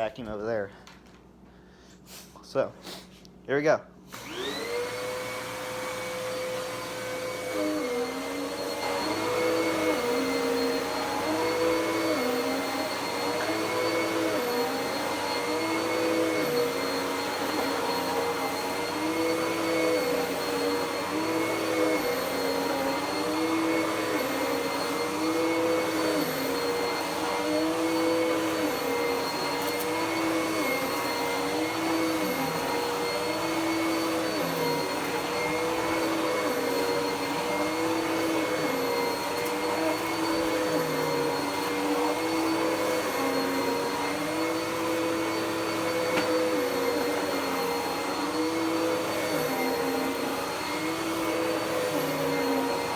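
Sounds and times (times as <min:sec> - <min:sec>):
vacuum cleaner running on carpet: 0:04.1 - 0:52.9.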